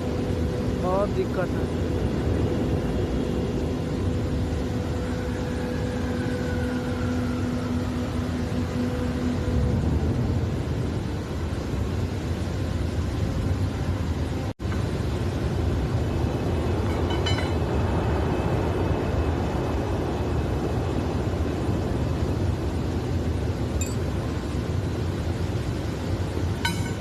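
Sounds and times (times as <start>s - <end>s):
industrial machinery rumble and hiss: 0.0s - 27.0s
faint metallic clink: 16.9s - 17.6s, 23.8s - 24.0s, 26.6s - 27.0s.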